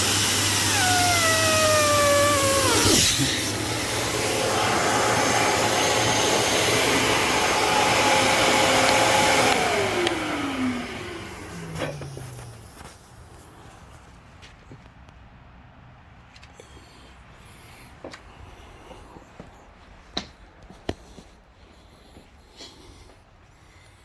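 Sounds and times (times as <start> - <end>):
electric blower motor whining: 0.0 - 12.9.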